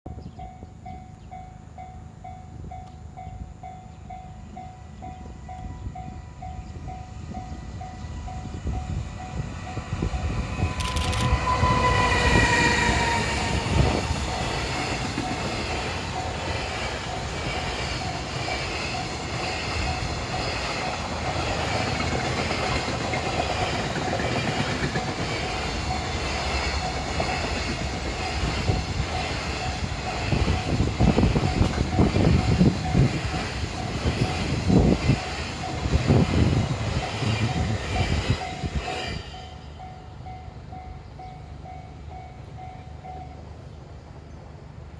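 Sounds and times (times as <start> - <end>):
train wheels on rails: 0.1 - 44.9
level-crossing alarm ringing: 0.4 - 33.6.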